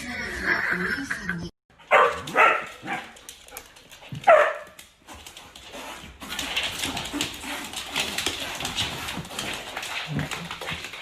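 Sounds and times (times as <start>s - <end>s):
dog barking: 1.8s - 3.2s, 4.2s - 4.8s.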